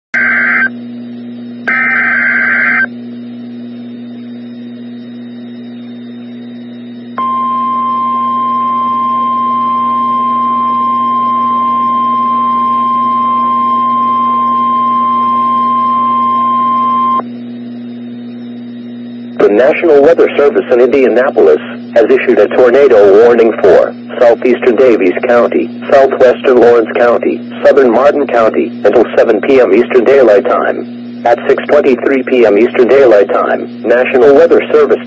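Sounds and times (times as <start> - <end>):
steady alarm tone: 0.2 - 3.0, 4.2 - 34.9
low hum: 0.2 - 35.0
digital data screech: 1.7 - 2.9.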